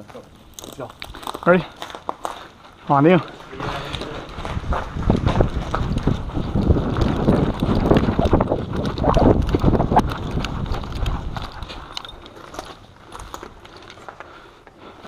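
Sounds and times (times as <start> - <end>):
running footfalls: 1.1 - 15.0
wind rushing over microphone: 4.4 - 11.8.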